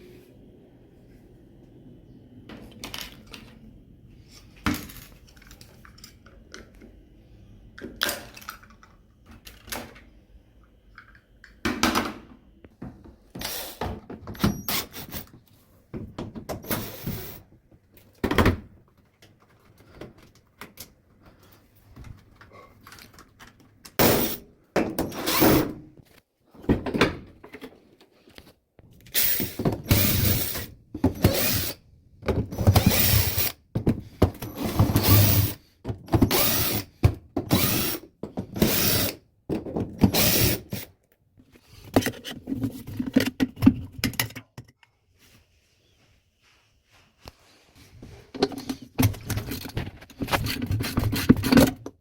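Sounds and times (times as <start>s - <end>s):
plastic and metal parts clunking: 17.8s - 31.6s, 32.2s - 38.8s, 39.4s - 40.9s, 41.7s - 44.9s, 48.3s - 52.0s.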